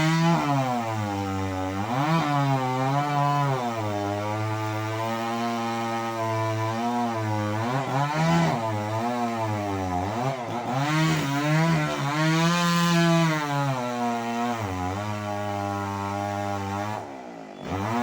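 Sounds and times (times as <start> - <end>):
chainsaw running: 0.0 - 18.0.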